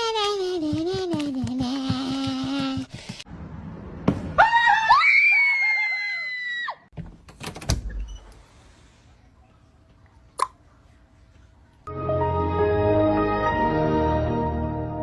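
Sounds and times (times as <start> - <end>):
loud high scream: 4.4 - 6.9.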